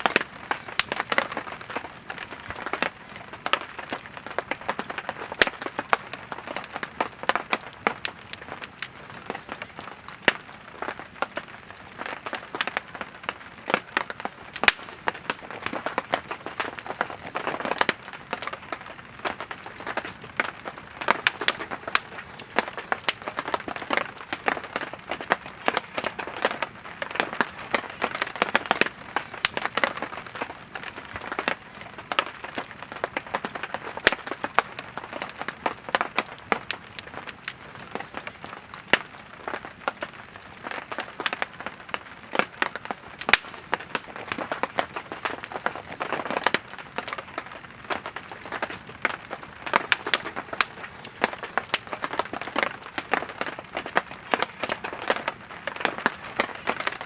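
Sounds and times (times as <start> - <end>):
campfire crackling and popping: 0.0 - 57.0.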